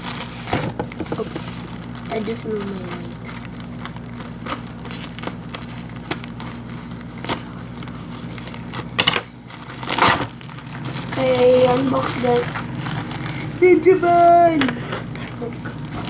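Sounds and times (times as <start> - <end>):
low background hum: 0.0 - 16.0
packaging crinkling: 0.0 - 16.0.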